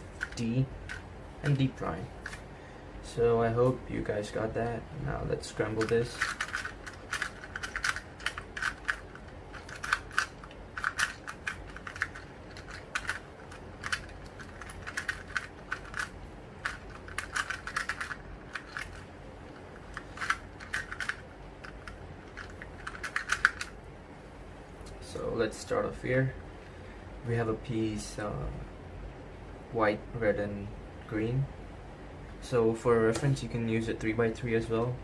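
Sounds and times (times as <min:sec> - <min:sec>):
puzzle cube clicking: 0:05.8 - 0:23.8.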